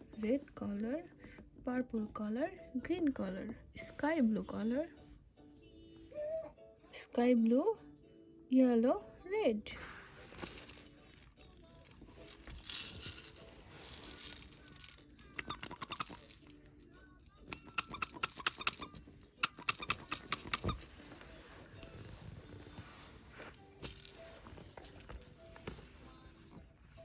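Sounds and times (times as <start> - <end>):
plastic toy pieces rattling: 10.3 - 21.2, 23.8 - 25.3.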